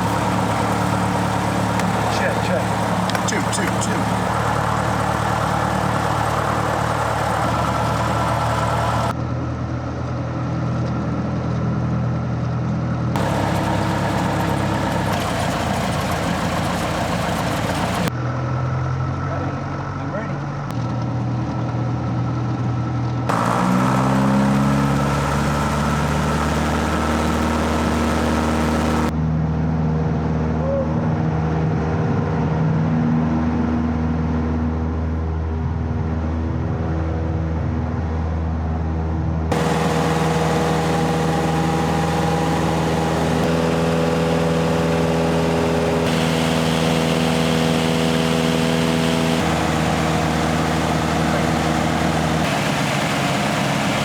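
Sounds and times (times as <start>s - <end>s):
piston engine and propeller: 0.0s - 9.2s, 13.2s - 18.1s, 23.3s - 29.1s, 39.5s - 54.0s.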